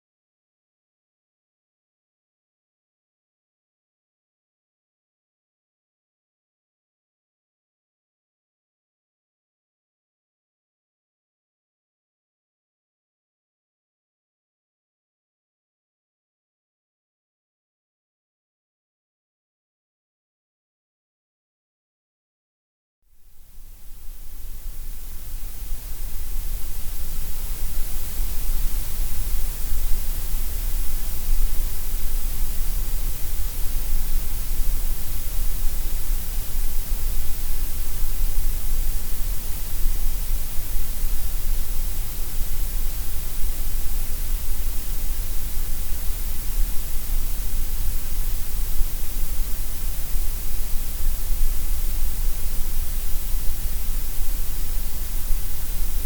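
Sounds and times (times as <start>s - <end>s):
steady white noise: 23.1s - 56.0s.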